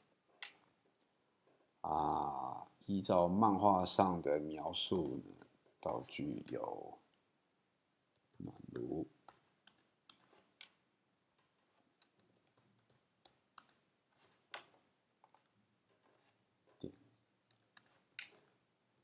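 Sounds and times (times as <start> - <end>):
keyboard and mouse clicks: 8.0 - 10.8, 11.4 - 18.5.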